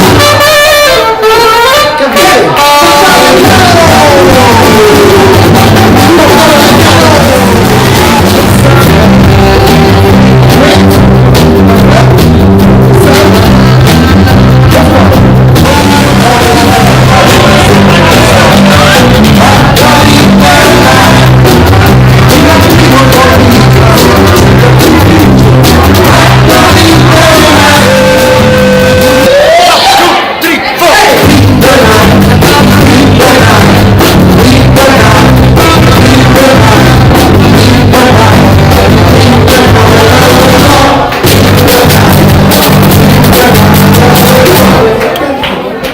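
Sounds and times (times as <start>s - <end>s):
live band with loud bass line: 0.0s - 45.9s.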